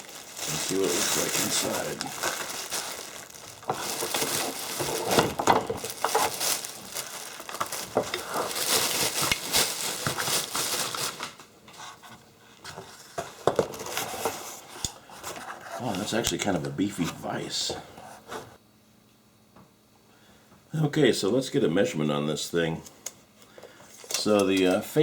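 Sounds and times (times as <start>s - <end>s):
plastic wrapping crinkling: 0.0s - 11.5s.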